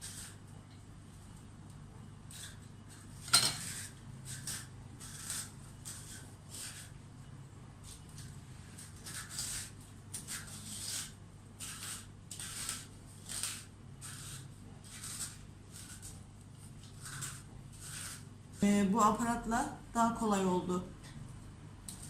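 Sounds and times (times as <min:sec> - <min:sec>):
metal corer scraping radish: 0:07.8 - 0:18.3.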